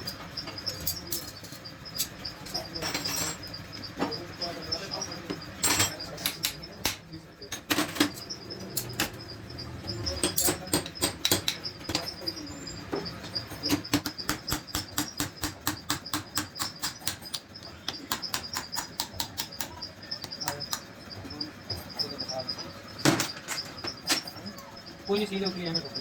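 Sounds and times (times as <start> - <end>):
faint high chirping: 0.0 - 26.0
sharp metallic taps: 5.3 - 9.3, 10.1 - 12.3, 13.0 - 21.0.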